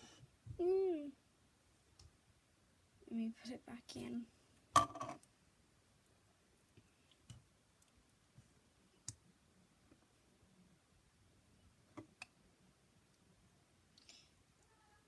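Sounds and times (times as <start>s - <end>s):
faint clicks of small objects: 13.9s - 14.8s.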